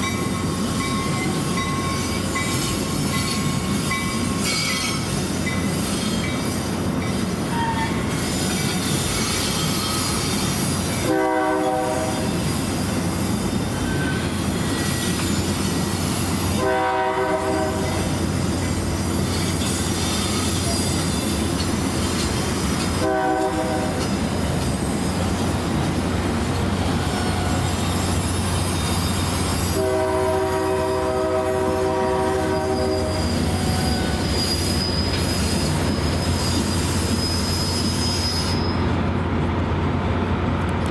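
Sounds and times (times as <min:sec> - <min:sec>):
train rumbling: 0:00.0 - 0:40.9
locomotive horn blasts: 0:11.0 - 0:12.4, 0:16.5 - 0:18.1, 0:22.9 - 0:24.1, 0:29.6 - 0:34.1.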